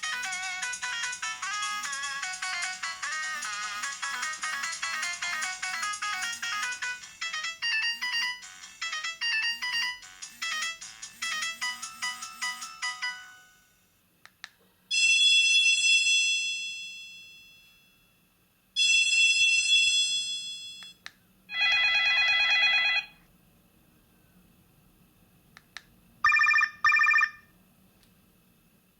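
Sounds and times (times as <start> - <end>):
bell-like ringtone tones: 0.0 - 13.7, 26.2 - 27.4
phone ringtone melody: 0.0 - 13.7, 21.5 - 23.1, 26.2 - 27.4.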